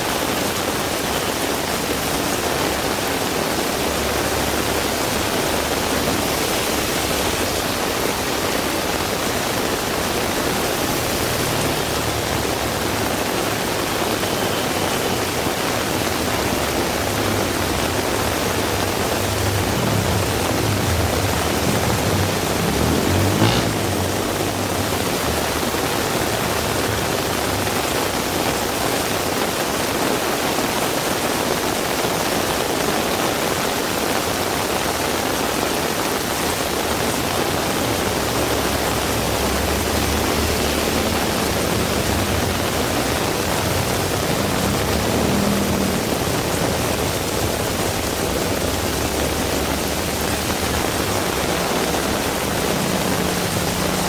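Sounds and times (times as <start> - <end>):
heavy rain falling: 0.0 - 54.0.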